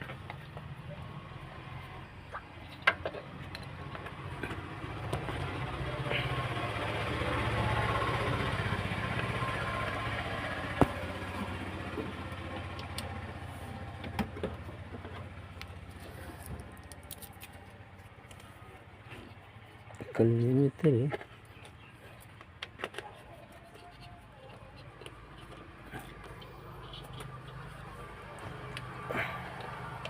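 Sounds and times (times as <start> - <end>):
motor vehicle passing by: 0.0 - 17.8, 24.7 - 30.0.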